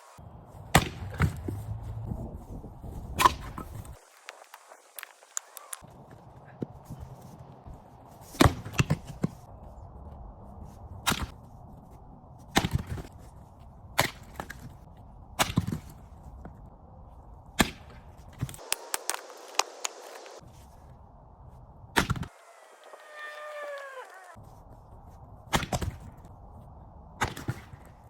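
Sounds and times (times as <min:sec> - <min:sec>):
axe strikes chopping wood: 0:00.7 - 0:01.5, 0:08.4 - 0:09.2, 0:25.5 - 0:26.1.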